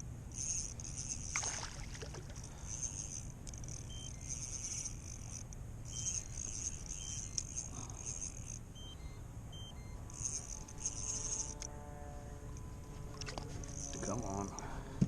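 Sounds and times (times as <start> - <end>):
fishing reel whirring: 0.0 - 9.2, 9.9 - 14.7
short high beeps: 3.8 - 4.9, 8.7 - 11.5.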